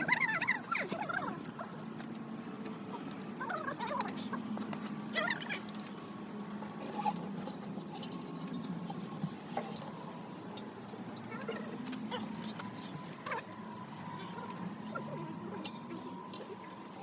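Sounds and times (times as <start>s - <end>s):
steady low hum: 0.0s - 17.0s
metal tools clinking on tyre rim: 6.8s - 13.6s.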